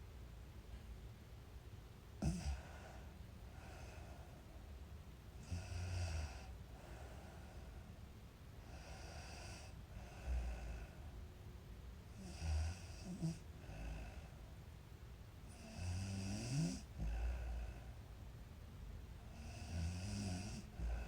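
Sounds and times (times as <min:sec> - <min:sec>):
girl snoring: 0:02.2 - 0:02.8, 0:12.2 - 0:14.2, 0:15.5 - 0:17.8, 0:19.4 - 0:21.0.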